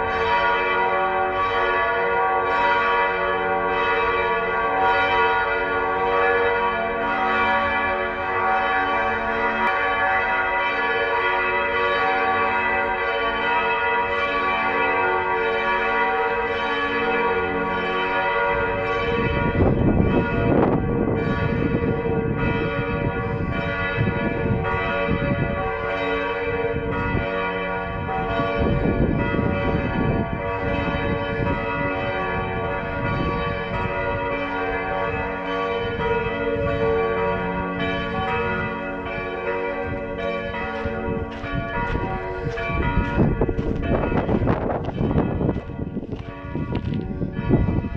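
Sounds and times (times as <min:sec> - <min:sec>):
church bells ringing: 0:00.0 - 0:47.9.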